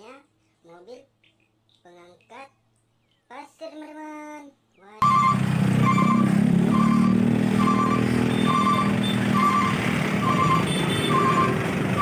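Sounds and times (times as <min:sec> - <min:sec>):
reversing alarm beeping: 0:05.0 - 0:12.0
truck engine rumbling: 0:05.0 - 0:12.0.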